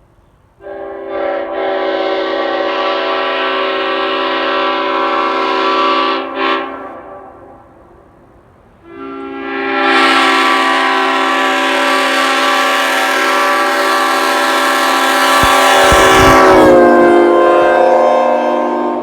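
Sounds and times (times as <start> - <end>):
air horn chord: 0.6 - 7.6, 8.8 - 19.0
low thumps: 15.4 - 16.9.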